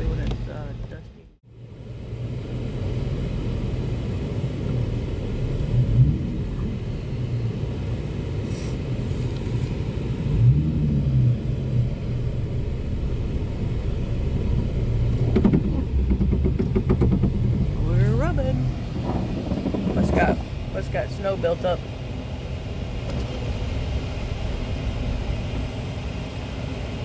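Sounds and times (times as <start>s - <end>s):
vehicle engine and tyres rumbling: 0.0s - 27.0s.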